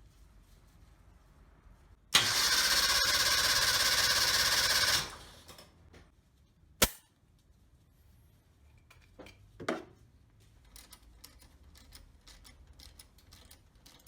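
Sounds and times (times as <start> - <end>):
engine turning over on starter: 2.2 - 5.6.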